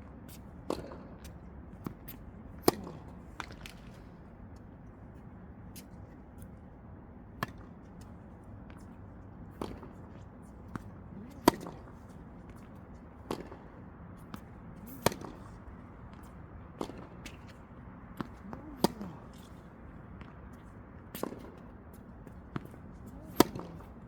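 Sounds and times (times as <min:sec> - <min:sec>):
tennis balls struck by rackets: 0:00.3 - 0:04.3, 0:07.4 - 0:08.1, 0:09.5 - 0:24.0
ball bouncing on court: 0:02.6 - 0:03.0, 0:18.2 - 0:19.4, 0:22.6 - 0:24.0.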